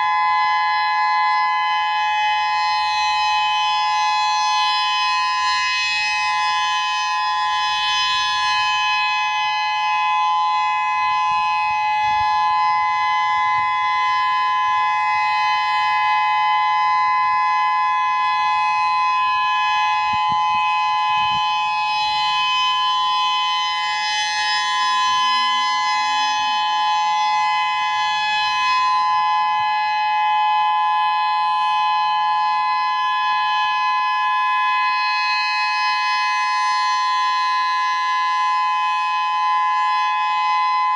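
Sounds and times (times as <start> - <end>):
warning siren steady two-note tone: 0.0 - 40.9.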